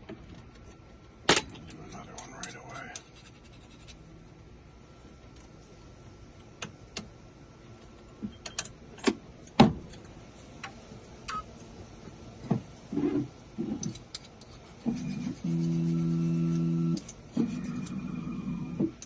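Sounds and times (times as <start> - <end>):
metal clicks of keys and machine: 8.4 - 10.1, 13.8 - 14.6, 17.0 - 17.2
short low buzzes: 15.0 - 18.8.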